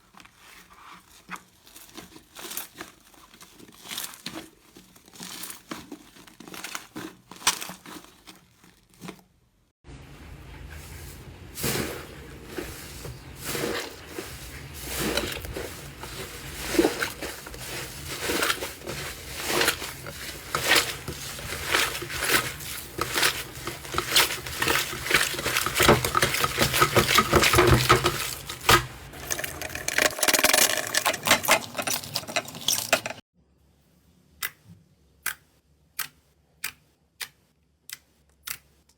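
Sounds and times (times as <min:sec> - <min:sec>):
slime squishing with crackles: 0:00.0 - 0:09.6, 0:11.6 - 0:30.0.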